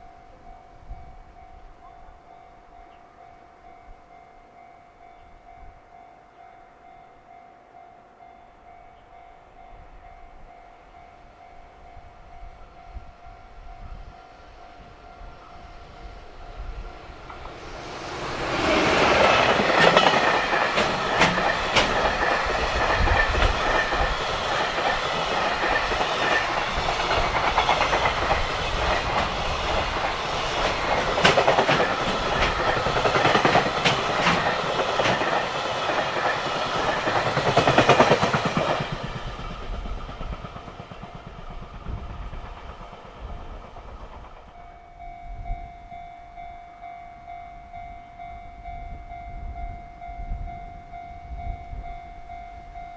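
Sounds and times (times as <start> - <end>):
quiet steady high tone: 0.0 - 21.4, 44.5 - 52.9
freight train wheels clacking: 12.6 - 46.9.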